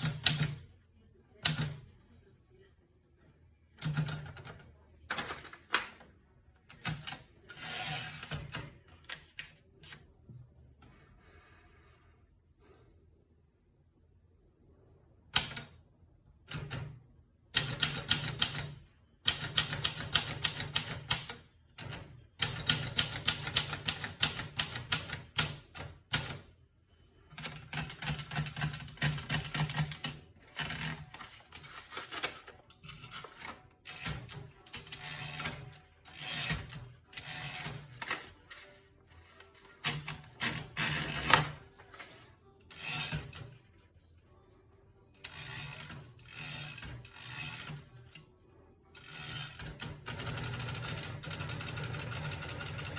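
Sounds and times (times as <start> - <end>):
manual typewriter typing: 0.0 - 0.6, 3.8 - 5.9, 6.7 - 9.4, 16.5 - 26.4, 27.3 - 38.6, 39.6 - 43.5, 45.2 - 48.0, 49.0 - 52.9.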